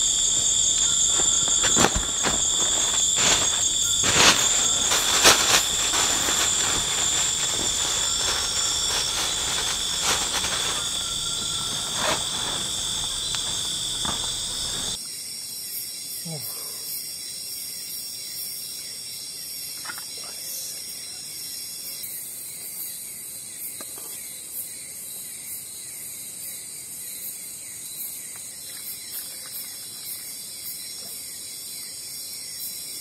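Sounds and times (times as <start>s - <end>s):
crickets chirring: 0.0s - 16.1s.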